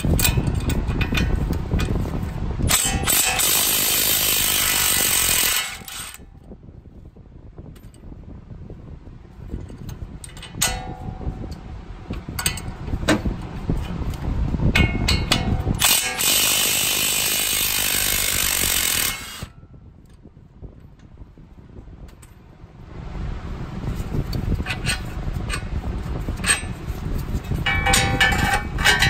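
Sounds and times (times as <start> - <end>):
metal tools clicking and knocking: 0.0 - 1.9, 9.6 - 13.2, 27.6 - 29.0
loud steady noise: 2.6 - 6.3, 10.3 - 19.6.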